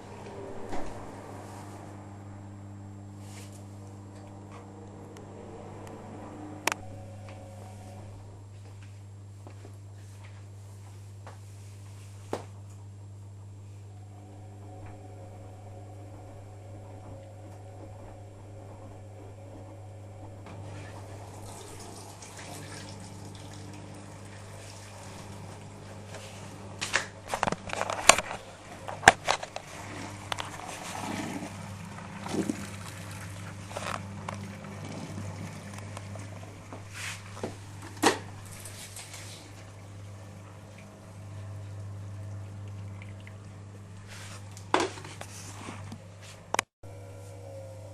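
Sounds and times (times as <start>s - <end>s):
washing machine hum: 0.0s - 47.9s
water rushing and sloshing: 28.4s - 37.3s.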